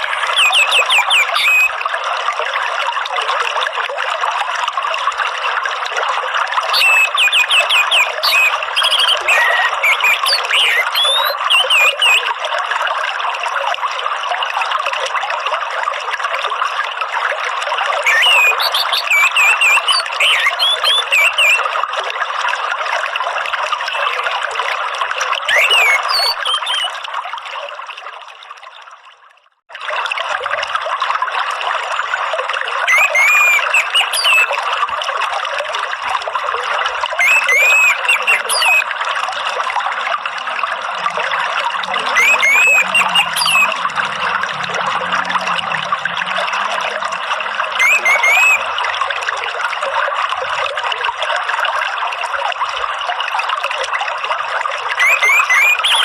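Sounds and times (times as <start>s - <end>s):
trickling water: 0.0s - 56.0s
thrush singing: 6.8s - 12.2s, 40.8s - 48.8s.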